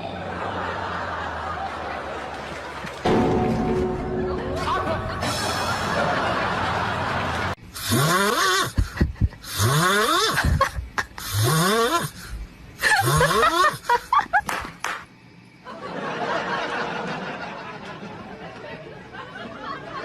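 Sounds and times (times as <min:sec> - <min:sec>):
person snoring: 0:07.8 - 0:08.8, 0:09.4 - 0:10.4, 0:11.2 - 0:12.3.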